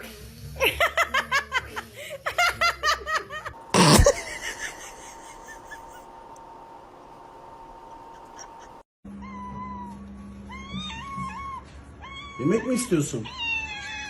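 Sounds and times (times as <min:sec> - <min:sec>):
person laughing: 0:00.6 - 0:06.1, 0:08.0 - 0:08.8
faint steady hum: 0:03.5 - 0:09.3.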